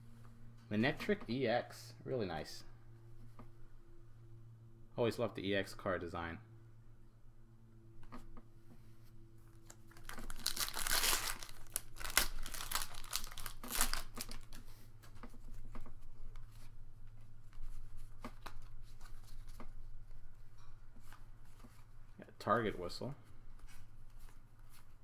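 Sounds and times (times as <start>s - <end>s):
foil pack crinkling: 9.5s - 14.8s
cards rustling and clicking: 9.5s - 16.7s, 17.5s - 20.2s.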